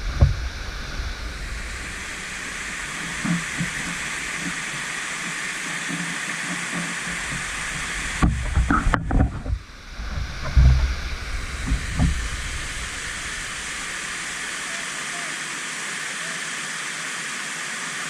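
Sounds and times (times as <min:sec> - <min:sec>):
waterfall rushing: 0:00.0 - 0:18.0
wind buffeting microphone: 0:07.0 - 0:14.2.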